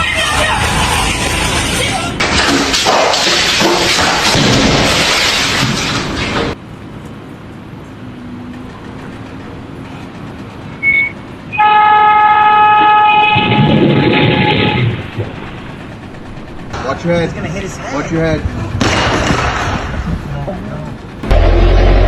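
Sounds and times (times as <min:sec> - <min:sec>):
short high beep: 0:10.8 - 0:11.7
steady horn blast: 0:11.5 - 0:15.1, 0:21.2 - 0:22.0
loud rushing noise: 0:21.2 - 0:22.0.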